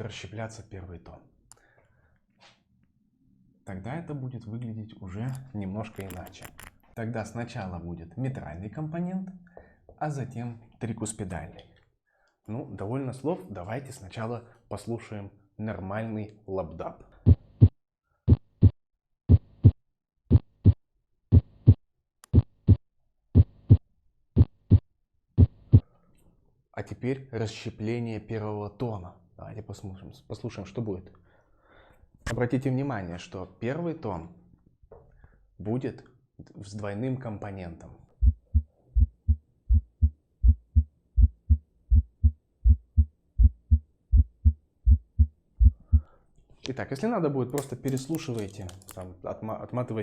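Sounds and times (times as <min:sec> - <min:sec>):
heartbeat lub-dub: 0:17.3 - 0:17.7, 0:18.3 - 0:22.8, 0:23.4 - 0:23.8, 0:24.4 - 0:24.8, 0:25.4 - 0:25.8, 0:38.2 - 0:46.1.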